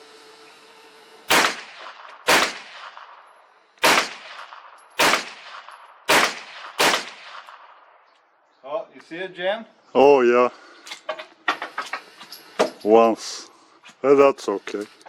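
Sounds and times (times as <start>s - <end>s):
rifle shots with echo: 1.3s - 8.0s.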